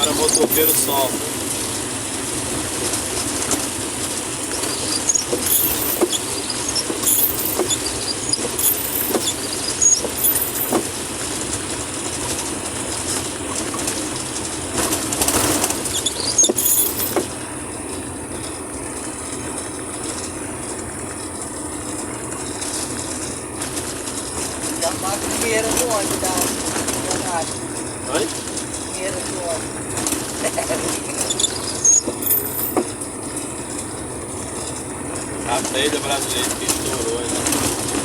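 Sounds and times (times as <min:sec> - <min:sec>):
high squeaks from vehicle: 0:00.0 - 0:01.4, 0:04.2 - 0:11.1, 0:14.8 - 0:17.4, 0:25.6 - 0:33.2, 0:35.5 - 0:38.0
road and engine rumble: 0:00.0 - 0:38.0.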